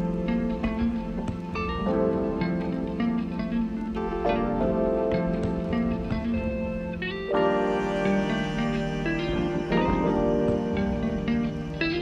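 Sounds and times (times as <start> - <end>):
plucked string instrument music: 0.0 - 12.0.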